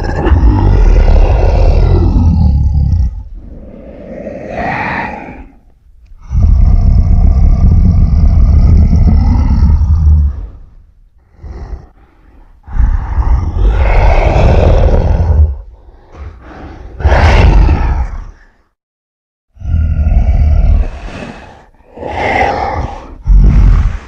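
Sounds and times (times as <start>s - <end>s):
deep monster roars: 0.0s - 5.6s, 6.2s - 18.5s, 19.6s - 24.0s
heavy low rumble: 5.7s - 15.9s.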